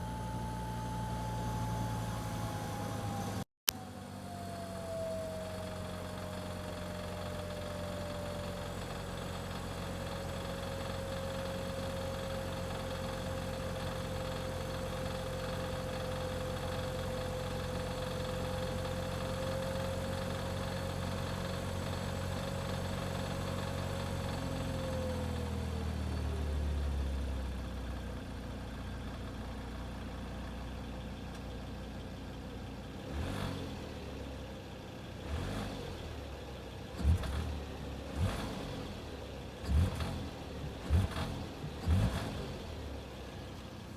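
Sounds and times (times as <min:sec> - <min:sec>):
steady engine whine: 0:00.0 - 0:08.2.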